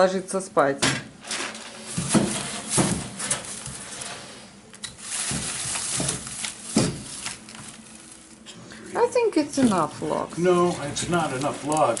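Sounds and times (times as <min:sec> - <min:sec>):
rustling: 0:05.0 - 0:08.5.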